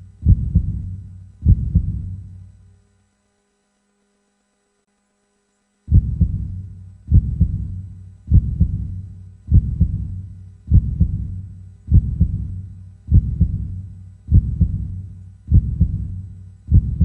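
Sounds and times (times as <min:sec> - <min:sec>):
slow heartbeat thumps: 0:00.0 - 0:02.4, 0:05.9 - 0:17.0.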